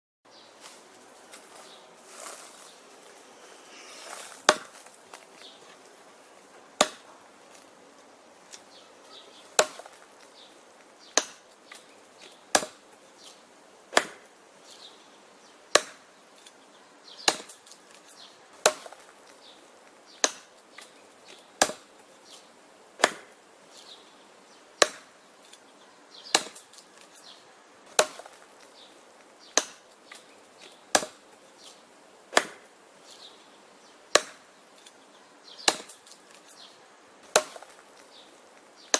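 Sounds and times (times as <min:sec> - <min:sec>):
axe chopping wood: 0:04.3 - 0:05.2, 0:06.8 - 0:07.6, 0:09.5 - 0:10.3, 0:11.0 - 0:12.8, 0:13.9 - 0:14.3, 0:15.7 - 0:16.1, 0:17.2 - 0:18.0, 0:18.6 - 0:19.3, 0:20.2 - 0:21.9, 0:23.0 - 0:23.4, 0:24.8 - 0:25.1, 0:26.3 - 0:26.7, 0:27.9 - 0:28.5, 0:29.5 - 0:31.2, 0:32.3 - 0:32.7, 0:34.1 - 0:34.5, 0:35.6 - 0:36.1, 0:37.2 - 0:38.1.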